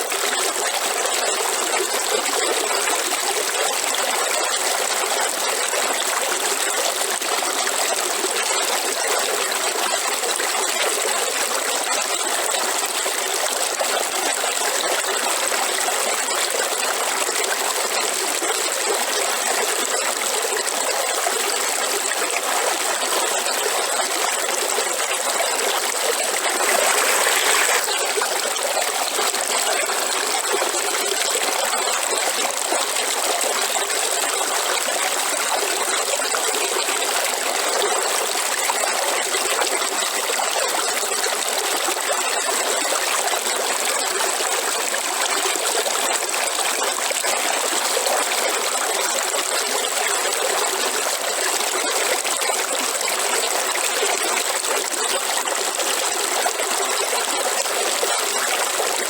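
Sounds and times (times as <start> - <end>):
river water flowing: 23.4 - 38.0.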